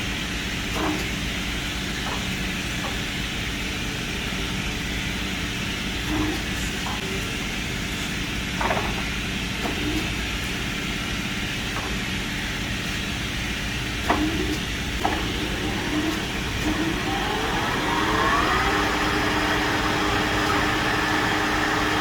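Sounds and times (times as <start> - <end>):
lathe humming: 14.7 - 22.0.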